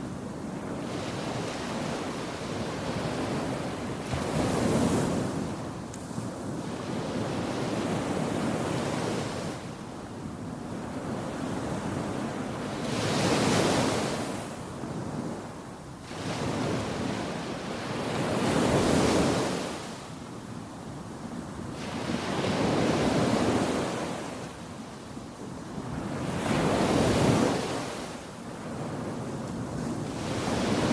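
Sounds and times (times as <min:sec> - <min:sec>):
surf washing onto beach: 0:21.6 - 0:30.9.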